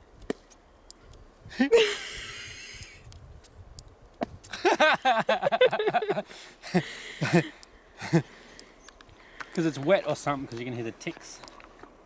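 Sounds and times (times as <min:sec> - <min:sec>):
person laughing: 0:01.5 - 0:03.0, 0:04.5 - 0:08.3.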